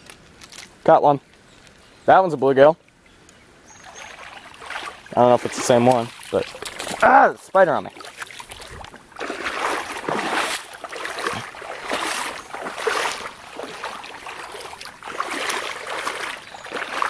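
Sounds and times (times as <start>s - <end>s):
creek water flowing: 2.5s - 17.0s
water splashing close by: 3.7s - 17.0s.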